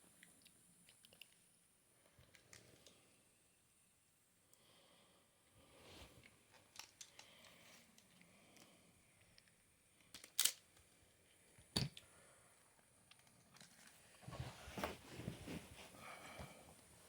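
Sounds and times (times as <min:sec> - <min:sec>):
scraping and rustling handling noise: 0:13.2 - 0:17.0.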